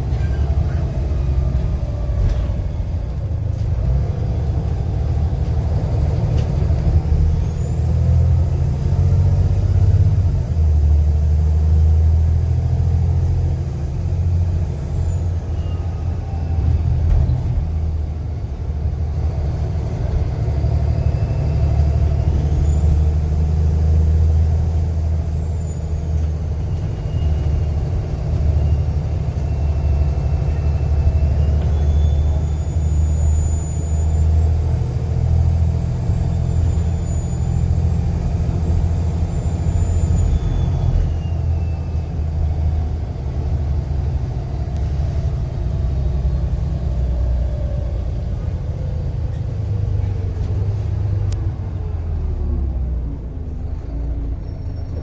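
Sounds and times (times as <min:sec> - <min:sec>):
bus diesel engine droning: 0:00.0 - 0:55.0
turbocharger whistle: 0:31.5 - 0:42.1.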